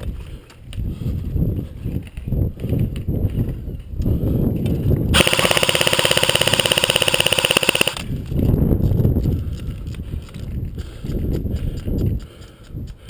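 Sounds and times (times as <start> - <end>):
airsoft gun full-auto rattle: 5.2 - 8.2.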